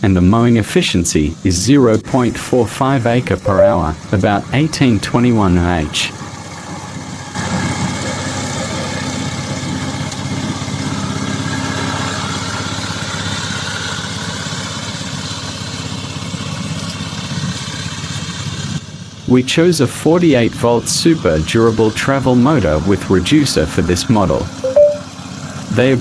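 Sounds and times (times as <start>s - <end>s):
mower engine running: 6.1s - 19.2s, 21.8s - 25.8s.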